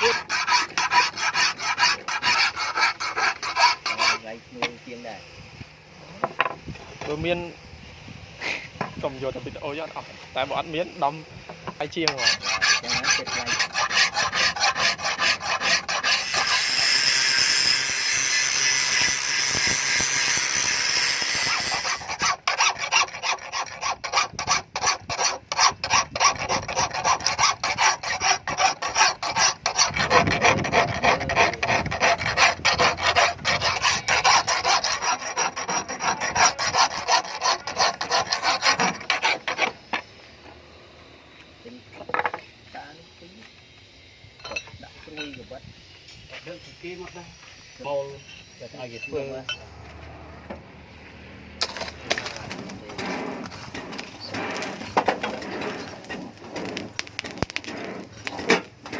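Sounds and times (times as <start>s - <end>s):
file scraping: 0.0s - 4.8s, 11.7s - 40.0s, 51.6s - 58.9s.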